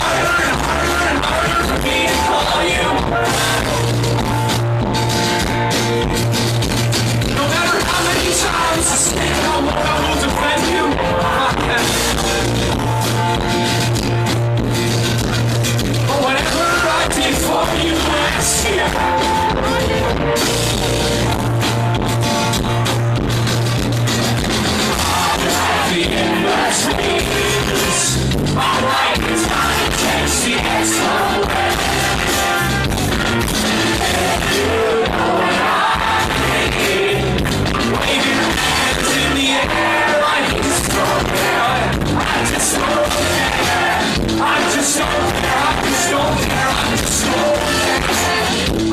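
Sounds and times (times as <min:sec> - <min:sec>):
person singing: 0:00.0 - 0:04.2, 0:07.4 - 0:12.6, 0:16.1 - 0:20.0, 0:24.9 - 0:32.7, 0:33.7 - 0:48.7
rock band playing: 0:00.0 - 0:48.9.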